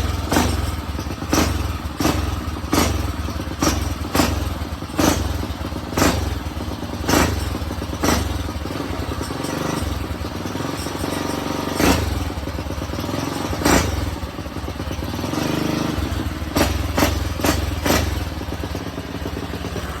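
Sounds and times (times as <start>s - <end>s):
sharp thumps and clatters: 0.0s - 14.5s
motorbike engine running: 0.0s - 20.0s.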